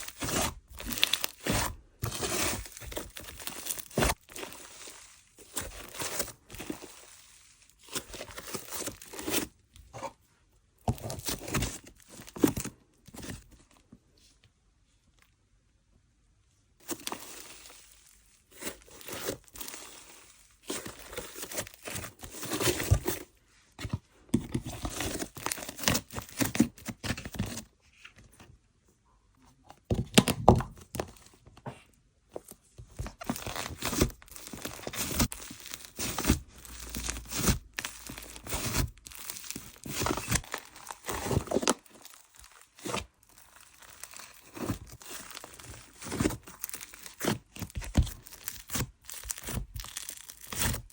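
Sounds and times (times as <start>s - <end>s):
slime crackling and tearing: 0.0s - 9.5s, 33.4s - 50.9s.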